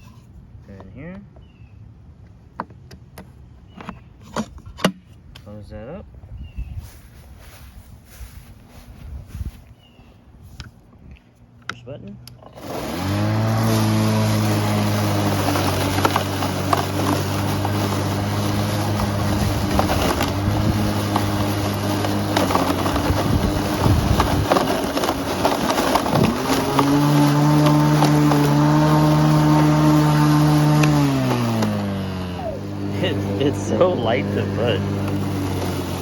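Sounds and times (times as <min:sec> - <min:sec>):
electric lawn mower humming: 0:12.2 - 0:36.0.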